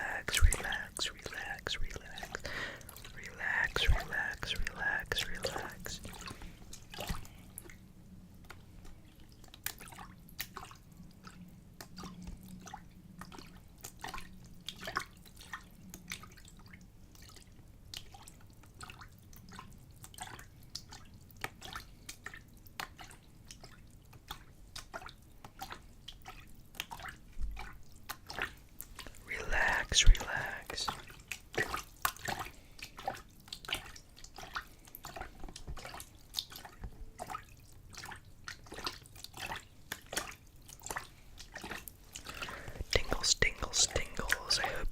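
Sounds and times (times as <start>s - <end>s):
water splashing in a container: 8.4s - 29.2s, 30.1s - 44.4s.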